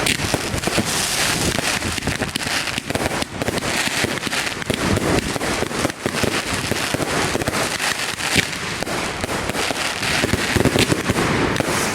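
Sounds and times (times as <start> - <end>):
fireworks crackling and banging: 0.0 - 11.9.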